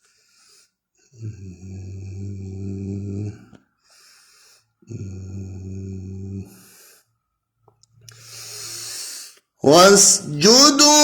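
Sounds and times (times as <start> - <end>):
man breathing: 3.8 - 4.8, 8.1 - 9.5
man holding a nasal note: 9.6 - 11.0.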